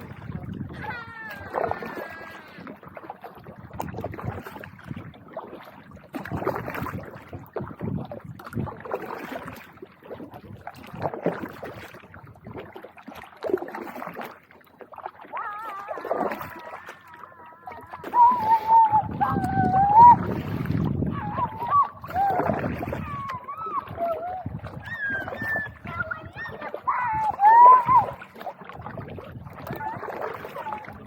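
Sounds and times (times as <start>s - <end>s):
paddle strokes splashing water: 0.0s - 31.0s.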